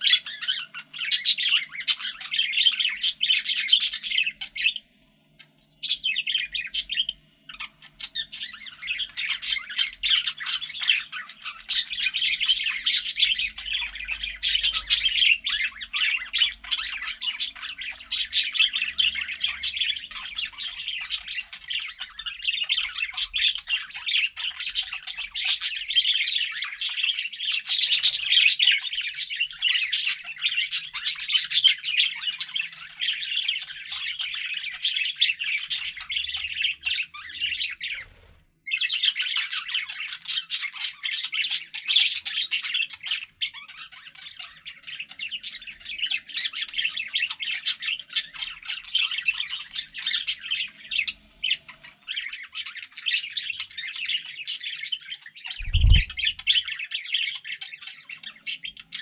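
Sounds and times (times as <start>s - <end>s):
budgerigars chirping: 0.0s - 59.0s.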